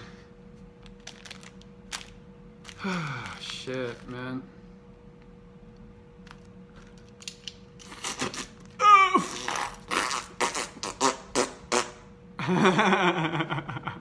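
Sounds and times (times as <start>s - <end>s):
man making vocal noises: 8.8s - 10.6s.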